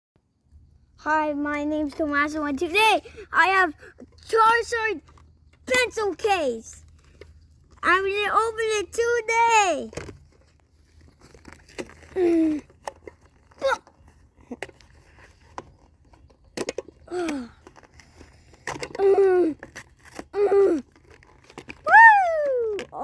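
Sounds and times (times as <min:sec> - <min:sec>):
packaging rustling and crinkling: 0:09.9 - 0:16.9, 0:19.6 - 0:21.9
child grunting: 0:17.1 - 0:17.6, 0:19.0 - 0:19.6, 0:20.4 - 0:20.8.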